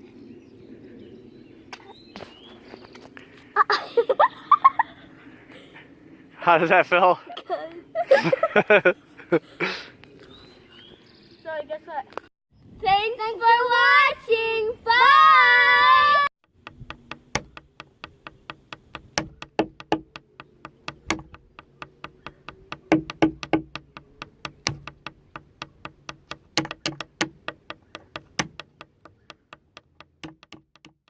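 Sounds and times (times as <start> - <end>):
sharp clicks or taps: 16.7 - 31.0.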